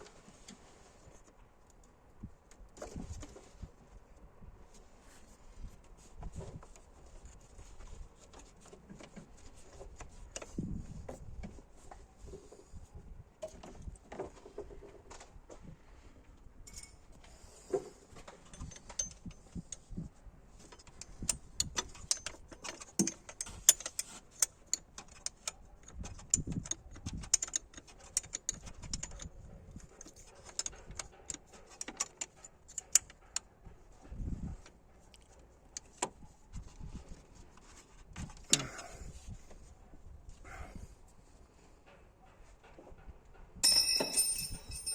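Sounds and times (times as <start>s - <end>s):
metal tools clinking: 16.7s - 17.0s, 43.6s - 44.9s.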